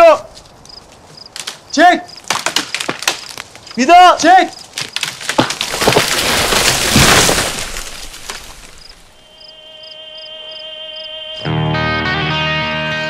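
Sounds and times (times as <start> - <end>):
crackling breaking rush: 0.4 - 9.2.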